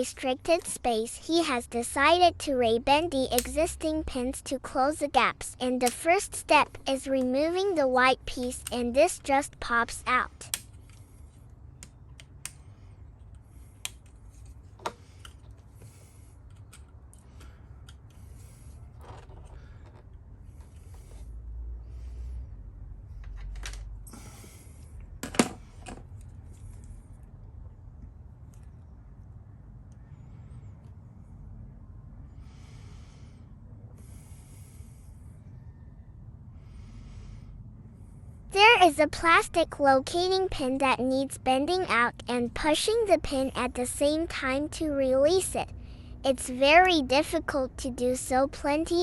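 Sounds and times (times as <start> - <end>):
low steady rumble: 8.0 - 38.6
person breathing close to microphone: 14.9 - 16.5, 17.2 - 22.9, 24.0 - 25.8, 32.3 - 35.7, 36.5 - 38.5.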